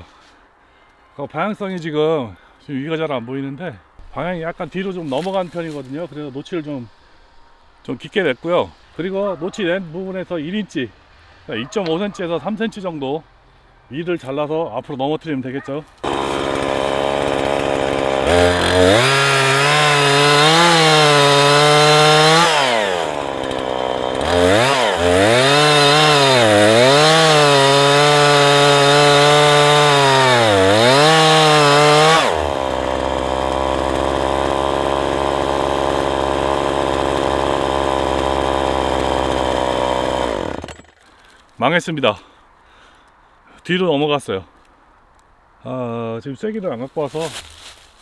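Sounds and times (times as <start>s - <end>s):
chainsaw idling: 16.0s - 41.1s
chainsaw cutting wood: 16.0s - 41.4s.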